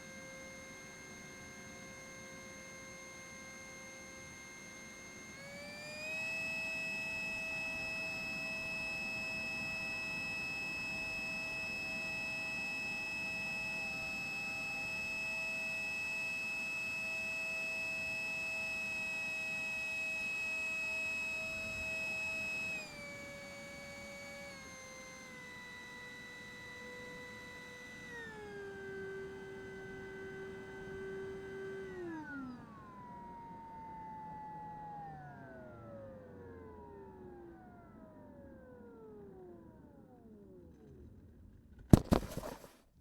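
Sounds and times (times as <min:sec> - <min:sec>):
jet motor and fan whining: 0:00.0 - 0:17.1, 0:18.0 - 0:39.9.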